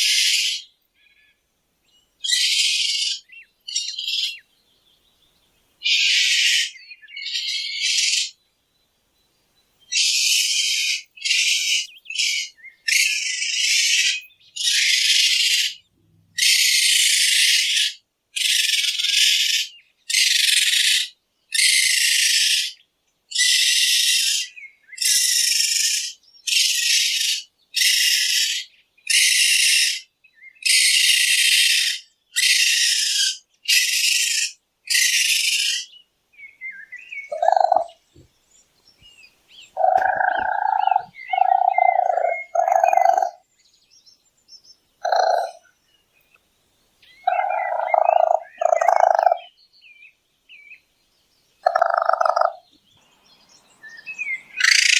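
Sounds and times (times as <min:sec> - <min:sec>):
raccoon chittering calls: 0:00.0 - 0:00.7, 0:02.2 - 0:04.4, 0:05.8 - 0:08.4, 0:09.9 - 0:15.8, 0:16.4 - 0:36.0, 0:37.2 - 0:38.0, 0:39.6 - 0:43.4, 0:45.0 - 0:45.7, 0:47.1 - 0:49.5, 0:51.6 - 0:52.7, 0:54.1 - 0:54.9
raccoon hissing: 0:39.8 - 0:43.3.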